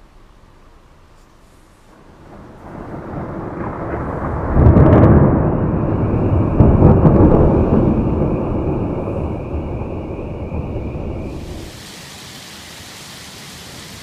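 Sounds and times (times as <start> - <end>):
thunder rumbling: 1.8 - 11.9.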